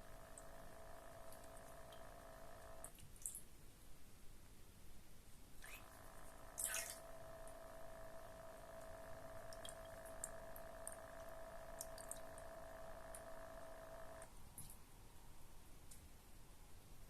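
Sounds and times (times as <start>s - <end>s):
water pump humming with whiny tone: 0.0s - 3.0s, 5.6s - 14.4s
water splashing: 6.6s - 7.1s
faint water drips: 9.4s - 12.5s.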